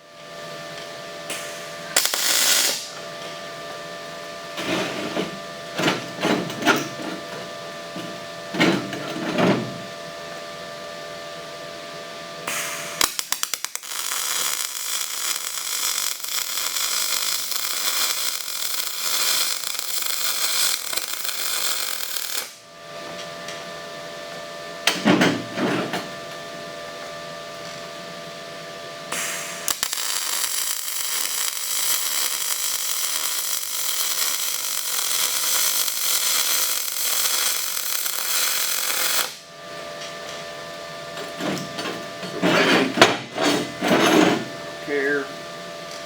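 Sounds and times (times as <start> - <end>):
welding arc crackling and hissing: 1.3 - 3.0, 12.5 - 22.6, 29.1 - 39.4.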